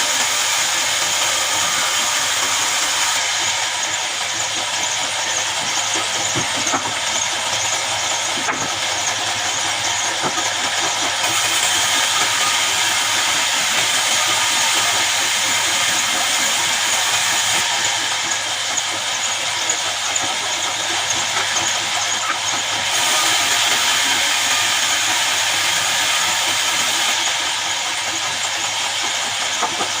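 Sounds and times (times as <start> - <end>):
band saw cutting log: 0.0 - 30.0.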